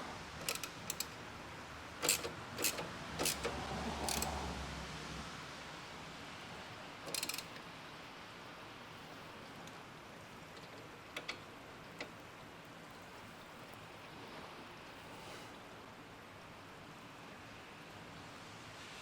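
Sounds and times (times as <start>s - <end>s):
faint steady hiss: 0.0s - 19.0s
hand tools clicking on metal: 0.4s - 1.2s, 2.0s - 4.4s, 7.1s - 7.6s.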